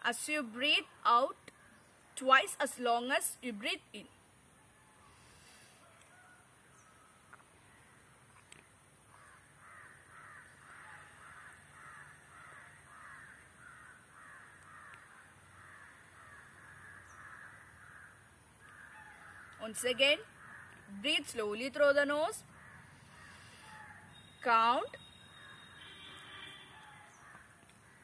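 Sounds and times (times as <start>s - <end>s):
faint repeated bird calls: 0.0s - 28.0s.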